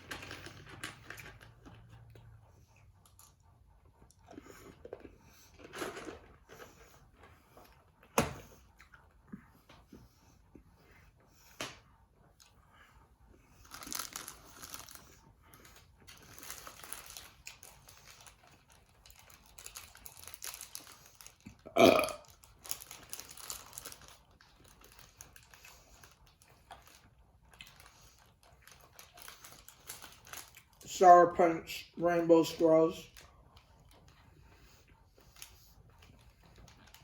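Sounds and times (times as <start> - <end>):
woman burping: 21.7 - 22.2.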